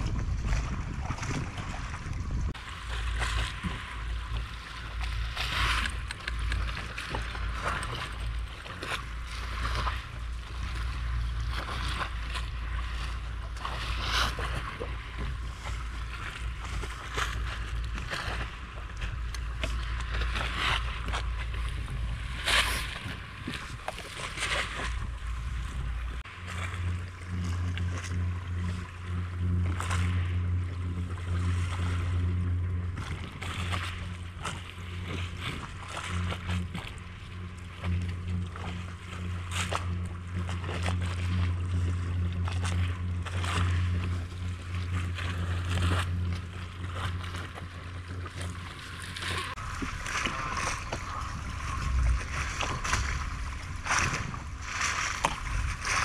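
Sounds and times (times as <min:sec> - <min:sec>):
boat engine humming: 0:00.0 - 0:56.0.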